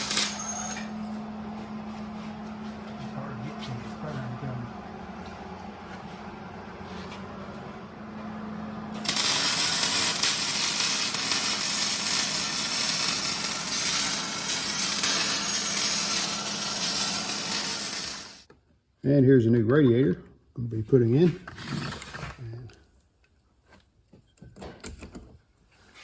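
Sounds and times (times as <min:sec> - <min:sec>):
power tool hissing: 0:00.0 - 0:00.8, 0:09.0 - 0:18.4.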